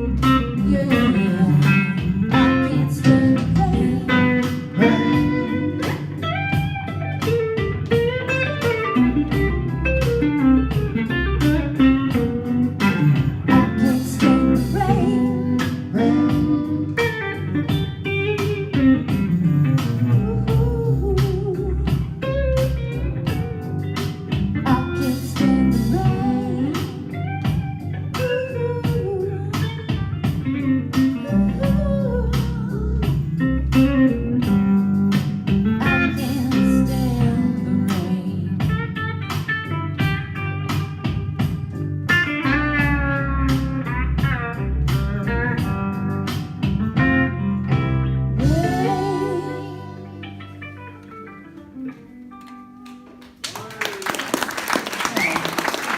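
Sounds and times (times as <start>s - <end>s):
person singing: 0.0s - 6.7s, 11.7s - 23.4s, 24.5s - 39.0s, 48.4s - 50.6s
low accompaniment: 0.0s - 53.1s
blues guitar melody: 0.0s - 53.4s.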